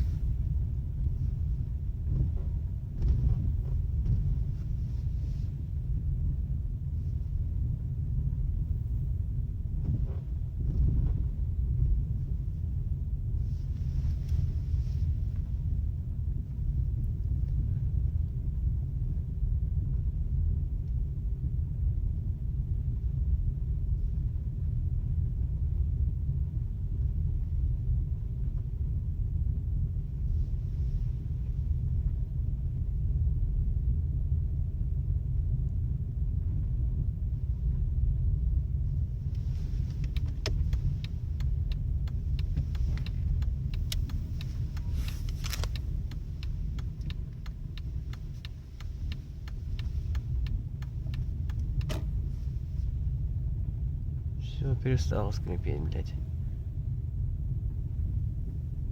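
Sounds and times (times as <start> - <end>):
car engine low rumble: 0.0 - 58.9
sharp clicks and ticks: 39.3 - 52.1.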